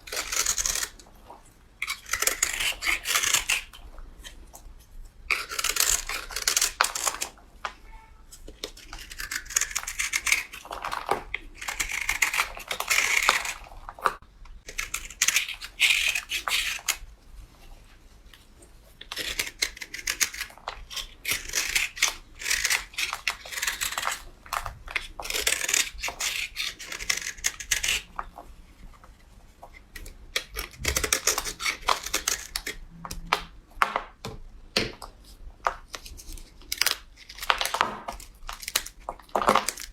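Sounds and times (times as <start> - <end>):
blade scraping through soap: 0.0 - 7.4, 8.3 - 17.1, 19.0 - 32.8.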